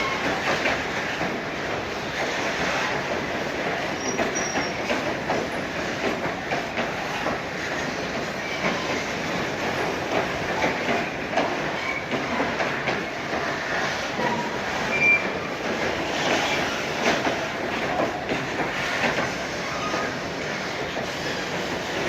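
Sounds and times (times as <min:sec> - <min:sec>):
train wheels squealing: 0:00.0 - 0:00.6, 0:03.9 - 0:05.7, 0:07.8 - 0:10.0, 0:11.6 - 0:12.6, 0:13.7 - 0:17.4, 0:19.3 - 0:22.0
train wheels clicking over rail joints: 0:00.0 - 0:22.0.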